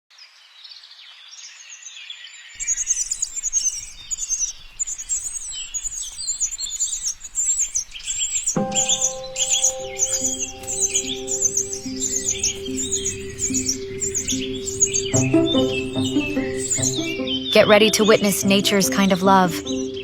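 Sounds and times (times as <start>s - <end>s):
birds chirping: 2.6s - 20.0s
background music: 8.6s - 20.0s.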